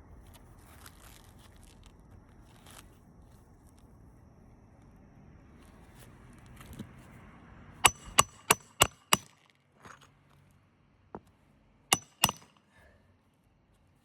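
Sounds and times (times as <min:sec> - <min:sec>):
hammer striking roofing nail: 0:07.8 - 0:09.4, 0:11.9 - 0:12.5.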